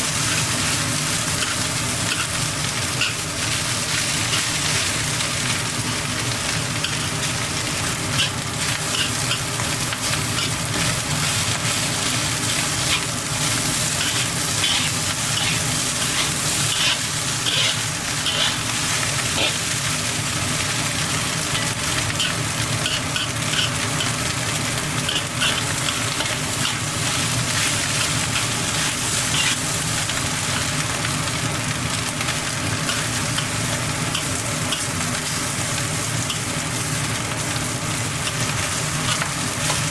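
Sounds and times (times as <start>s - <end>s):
fried rice sizzling in pan: 0.0s - 39.9s
utensil scraping pan: 13.8s - 18.6s, 21.6s - 24.2s, 25.0s - 29.7s.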